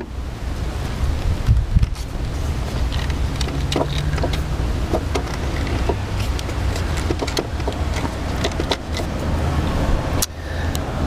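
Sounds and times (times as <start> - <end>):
rubber tubing clicks and knocks: 2.8 - 9.1.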